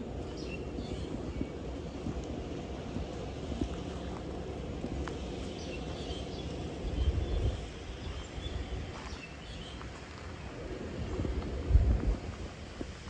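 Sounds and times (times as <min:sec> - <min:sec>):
wind: 0:00.0 - 0:13.0
small birds chirping: 0:00.2 - 0:01.6, 0:05.4 - 0:09.9.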